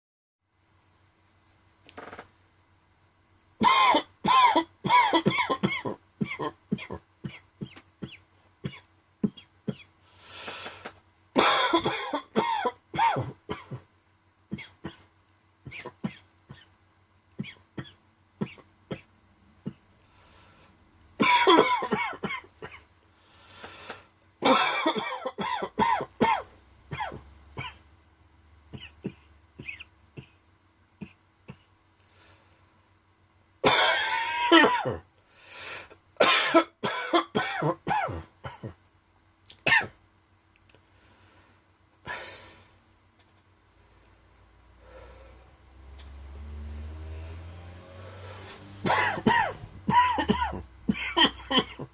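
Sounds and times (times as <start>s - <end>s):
person coughing: 3.6s - 9.9s, 11.4s - 13.8s, 21.2s - 22.8s, 24.4s - 27.8s, 33.6s - 35.0s, 36.2s - 38.8s, 39.6s - 40.0s, 48.8s - 51.9s.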